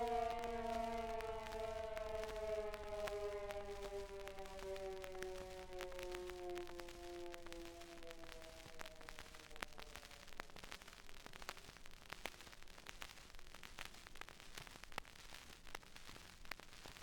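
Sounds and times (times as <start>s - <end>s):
falling siren tone: 0.0s - 9.2s
record clicks and pops: 0.0s - 17.0s
record surface hiss and crackle: 0.0s - 17.0s.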